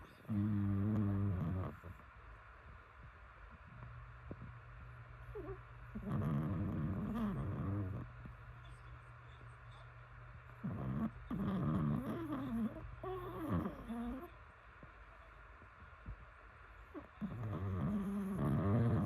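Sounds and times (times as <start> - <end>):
dog snoring: 0.2 - 2.0, 5.3 - 8.1, 10.6 - 14.3, 16.9 - 19.0.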